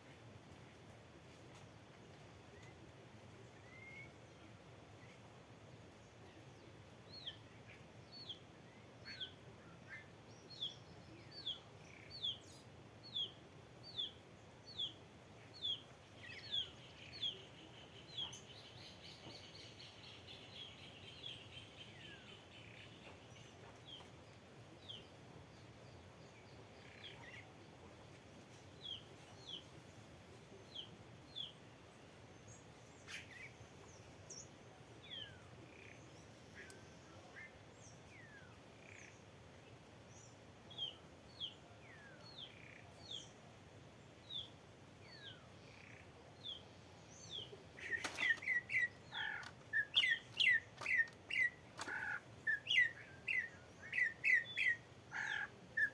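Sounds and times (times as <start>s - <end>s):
faint outdoor background: 0.0s - 55.9s
wild birds calling: 45.1s - 55.9s
bird chattering: 47.8s - 55.9s.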